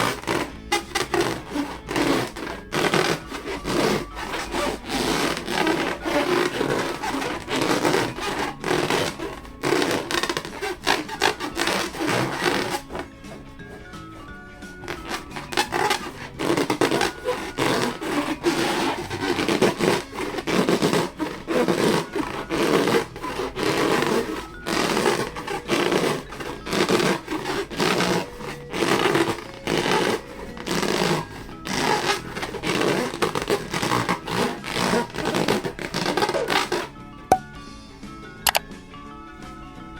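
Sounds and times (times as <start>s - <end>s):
rubber balloons rubbed by hand: 0.0s - 38.6s
sharp click: 38.5s - 38.7s.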